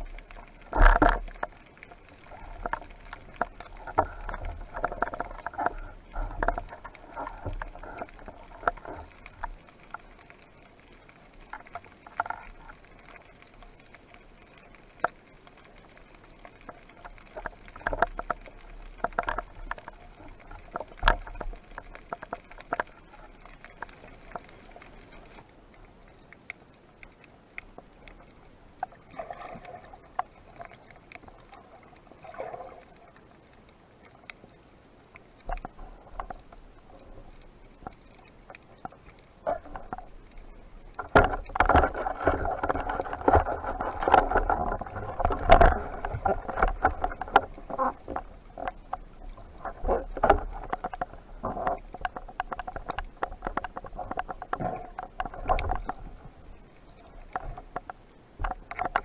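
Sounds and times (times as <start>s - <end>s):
underwater clicks and knocks: 0.0s - 33.0s, 35.1s - 59.0s
bubbly gurgling: 39.4s - 57.6s.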